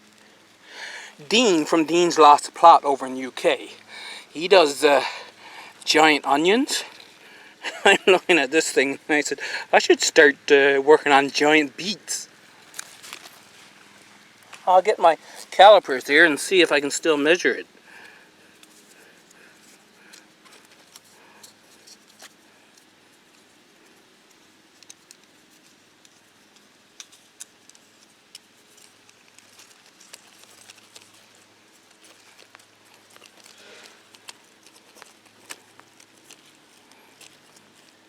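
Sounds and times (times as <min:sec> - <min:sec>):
light rustling of handling: 0:12.6 - 0:15.6, 0:18.0 - 0:38.0.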